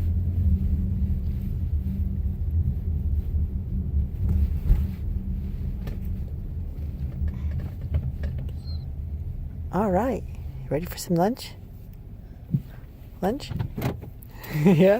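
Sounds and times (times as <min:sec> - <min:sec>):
car engine and tyres rumbling: 0:00.0 - 0:14.9.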